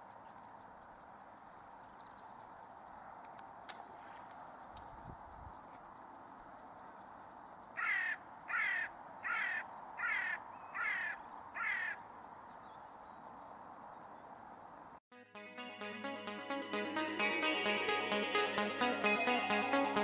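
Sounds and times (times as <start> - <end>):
crow cawing: 7.8 - 12.1.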